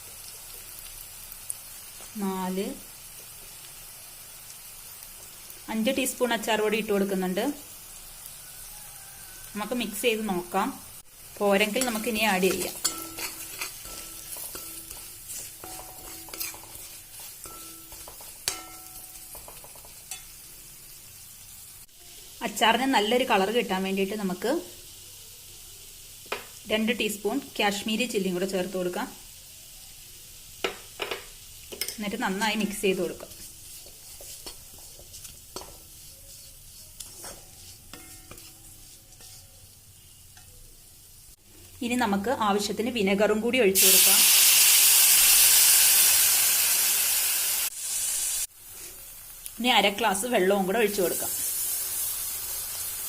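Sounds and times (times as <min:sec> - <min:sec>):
oil sizzling in a pan: 0:00.0 - 0:53.0
spoon knocking and scraping pan: 0:11.4 - 0:20.4, 0:26.2 - 0:26.6, 0:30.6 - 0:40.6.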